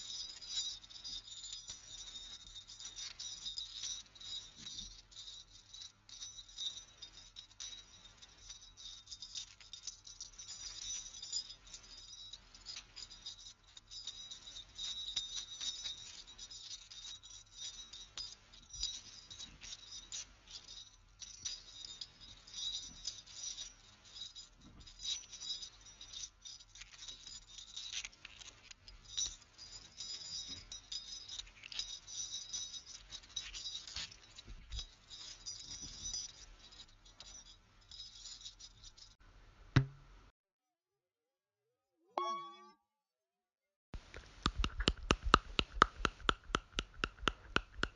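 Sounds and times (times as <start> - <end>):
jingling of small hard objects: 0.0 - 39.2
sharp knock: 39.8 - 40.0.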